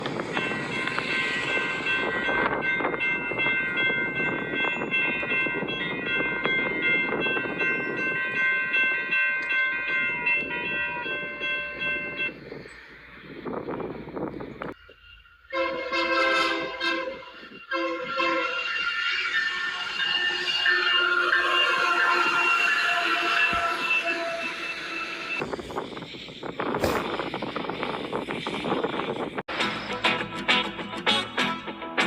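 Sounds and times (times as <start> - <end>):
rumble of train cars: 0.0 - 32.0
metallic brake squeal: 14.8 - 27.8
train horn: 15.5 - 25.4.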